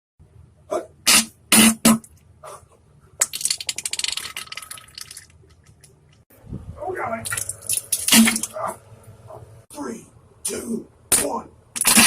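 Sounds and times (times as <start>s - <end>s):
wet farting: 1.1s - 2.1s, 7.3s - 8.6s, 11.8s - 12.0s.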